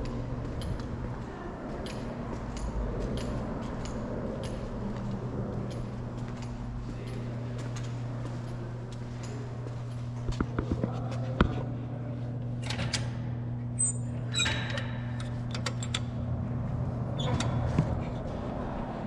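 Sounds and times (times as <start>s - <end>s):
low hum: 0.0s - 19.0s.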